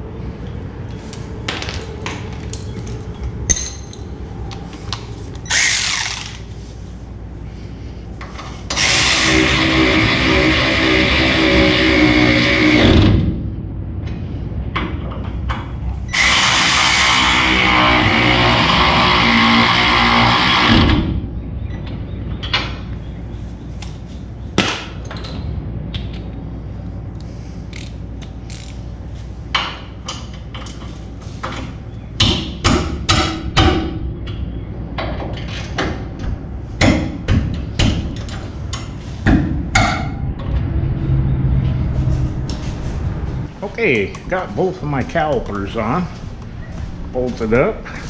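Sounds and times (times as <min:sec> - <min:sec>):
power tool running: 0:05.5 - 0:06.4, 0:08.7 - 0:13.2, 0:16.1 - 0:21.0
ratchet and hand tools clicking: 0:27.7 - 0:28.8.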